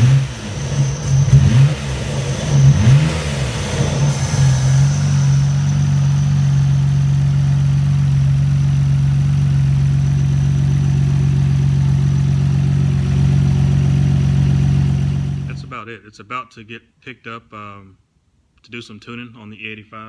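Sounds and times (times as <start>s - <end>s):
car engine idling: 0.0s - 15.7s.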